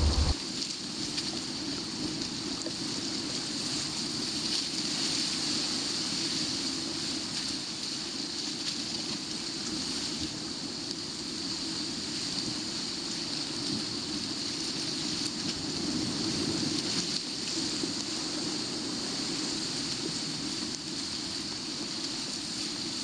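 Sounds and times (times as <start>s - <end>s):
sea waves against rocks: 0.0s - 0.4s.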